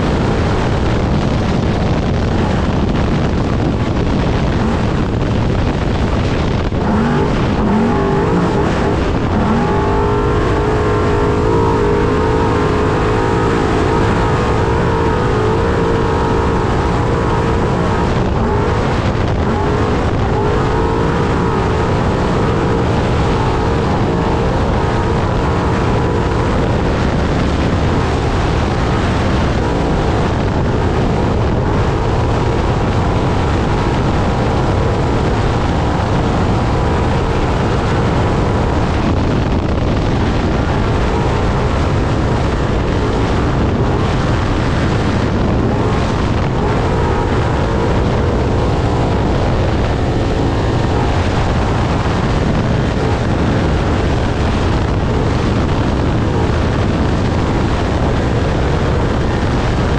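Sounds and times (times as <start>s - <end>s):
rough terrain noise: 0.0s - 59.9s
wind rush: 0.0s - 59.9s
loud truck engine: 3.6s - 57.7s.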